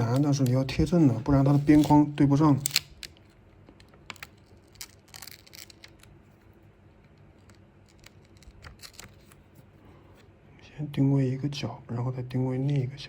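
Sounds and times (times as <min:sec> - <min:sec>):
plastic film rustling: 0:00.0 - 0:03.2.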